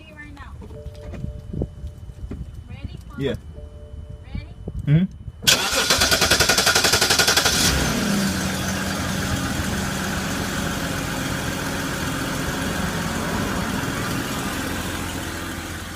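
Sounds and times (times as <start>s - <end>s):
car engine starting and idling: 5.4s - 15.9s
starter motor cranking: 5.5s - 8.6s.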